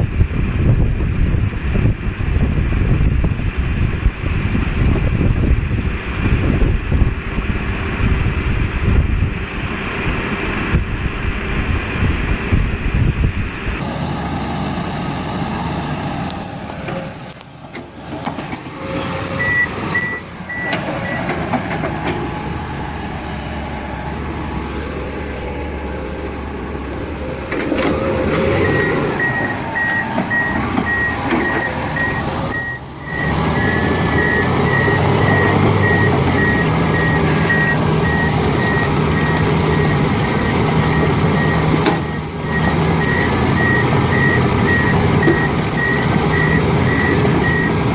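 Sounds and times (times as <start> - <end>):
heavy equipment engine running: 0.0 - 47.9
reversing alarm beeping: 18.8 - 23.0, 27.7 - 47.8.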